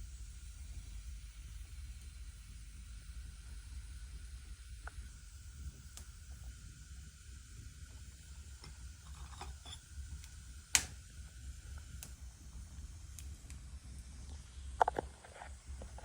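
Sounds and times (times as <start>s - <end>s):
wood fire crackling: 7.7s - 16.0s.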